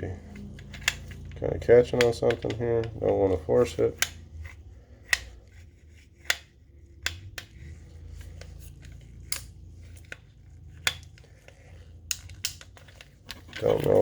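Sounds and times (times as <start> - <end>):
pistol slide metal clicks: 4.0 - 5.4.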